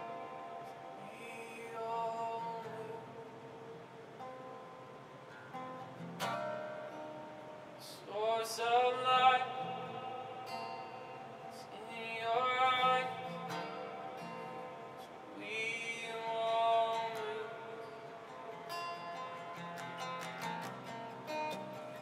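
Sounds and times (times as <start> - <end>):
person singing: 0.0 - 4.4, 7.8 - 20.9
guitar strumming: 0.0 - 22.0.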